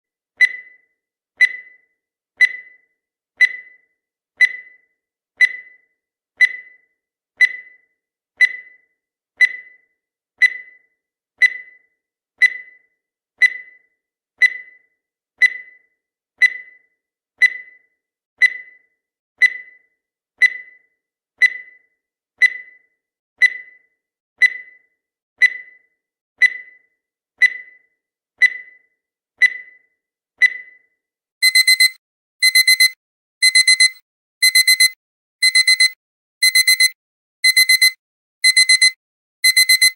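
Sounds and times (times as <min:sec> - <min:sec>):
short high beeps: 0:31.4 - 0:39.9.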